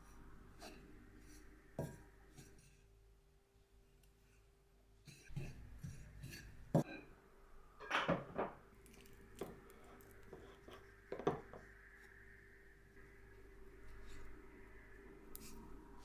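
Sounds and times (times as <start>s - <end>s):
low room hum: 0.0s - 16.0s
dishes and utensils clinking: 7.8s - 9.5s.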